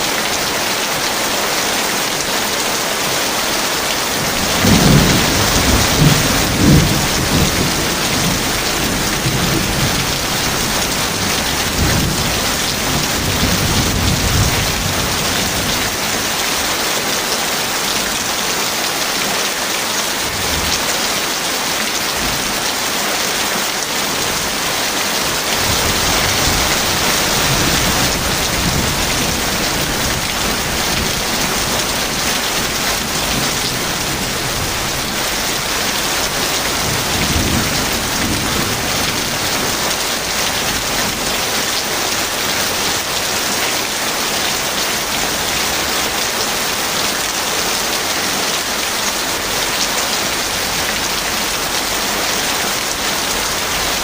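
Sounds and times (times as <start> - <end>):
heavy rain falling: 0.0 - 54.0
distant thunder rumbling: 4.2 - 16.0.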